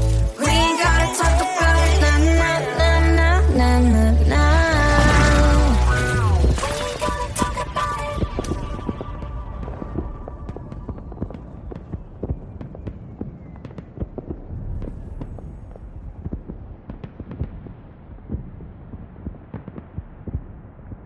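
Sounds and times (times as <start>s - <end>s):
music: 0.0s - 11.5s
sharp crackles and knocks: 5.0s - 21.0s
low rumble: 14.2s - 21.0s.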